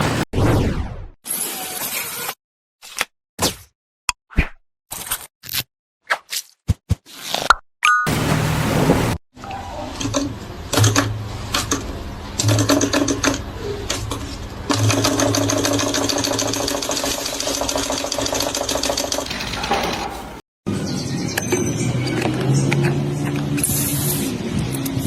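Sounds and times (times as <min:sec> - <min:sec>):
small machine clattering: 0:12.4 - 0:20.2.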